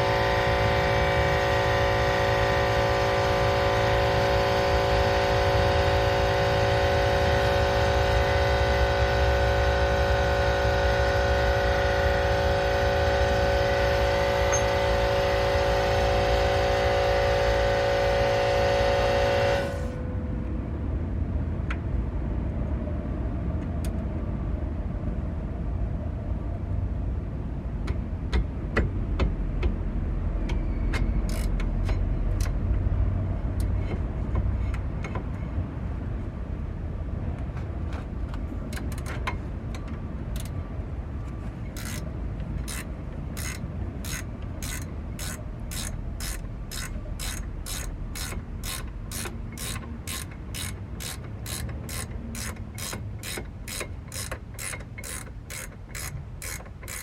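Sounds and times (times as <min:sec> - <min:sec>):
steady mechanical hum: 0:00.0 - 0:57.0
metal tools clicking: 0:41.7 - 0:57.0.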